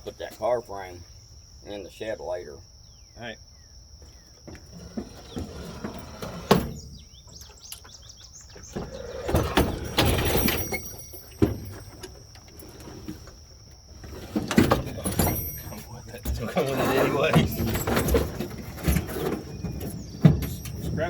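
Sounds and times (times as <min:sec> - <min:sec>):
insect chirring: 0:00.0 - 0:21.0
scraping rolling rumble: 0:04.5 - 0:21.0
metal knocks: 0:09.3 - 0:12.5, 0:14.3 - 0:21.0.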